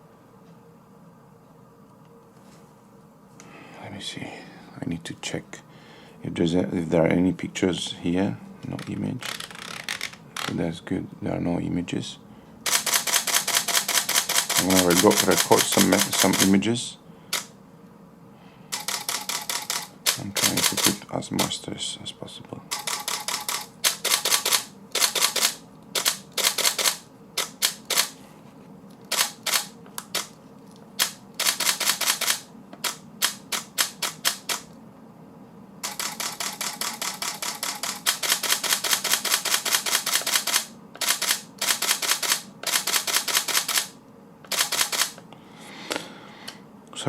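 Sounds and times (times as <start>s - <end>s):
camera shutter firing: 12.7s - 16.5s, 18.8s - 21.5s, 22.7s - 28.1s, 29.1s - 30.3s, 31.0s - 34.7s, 35.8s - 43.9s, 44.5s - 45.2s.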